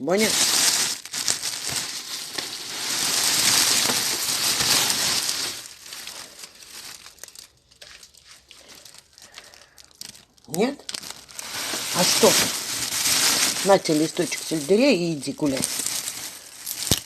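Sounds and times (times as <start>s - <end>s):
plastic bag rustling: 0.0s - 17.0s.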